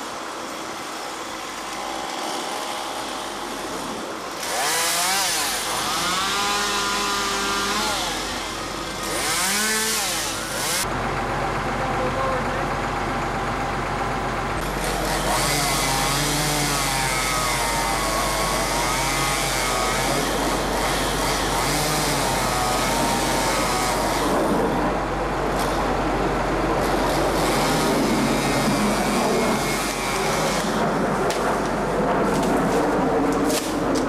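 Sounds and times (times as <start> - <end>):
chainsaw cutting wood: 0.6 - 10.9, 14.6 - 24.8, 25.5 - 25.9, 26.8 - 31.4.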